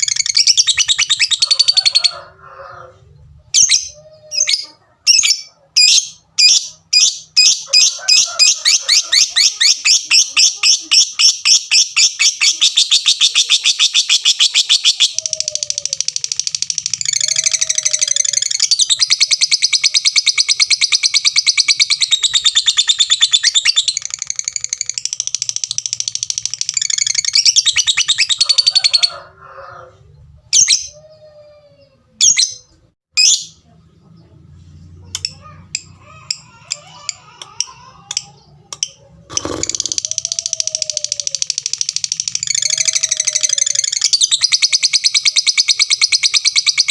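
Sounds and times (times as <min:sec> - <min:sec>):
bird chattering trill: 0:00.0 - 0:02.2, 0:03.5 - 0:29.2, 0:35.0 - 0:46.9
bird ticks and sharp calls: 0:11.3 - 0:29.2, 0:35.1 - 0:46.9.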